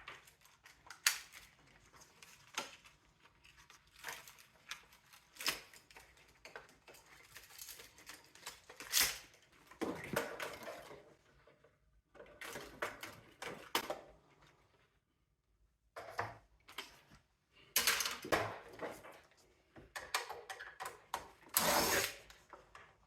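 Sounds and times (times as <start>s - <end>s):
plastic parts clicking and clattering: 0.0s - 14.5s, 16.0s - 23.0s.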